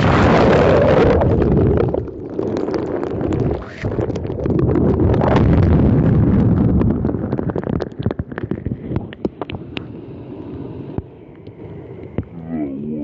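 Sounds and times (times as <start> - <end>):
wind buffeting microphone: 3.2 - 9.6
wavering pitched sound: 12.3 - 13.0.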